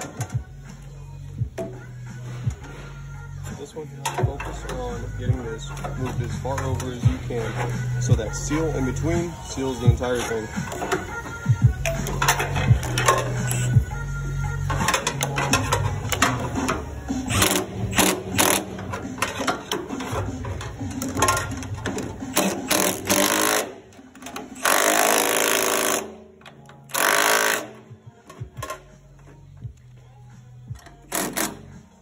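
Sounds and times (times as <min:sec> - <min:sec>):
metallic clicks and knocks: 0:14.6 - 0:23.2
powered tool bursts: 0:22.6 - 0:23.8, 0:24.6 - 0:26.1, 0:26.9 - 0:27.8.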